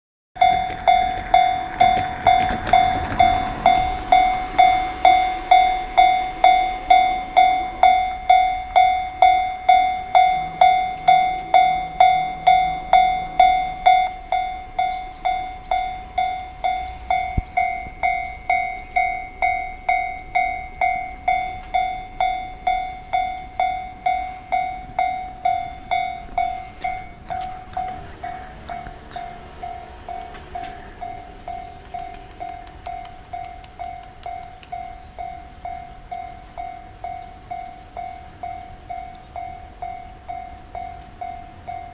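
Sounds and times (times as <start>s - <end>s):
level crossing warning bell ringing: 0.4s - 41.9s
train rushing: 0.4s - 41.9s.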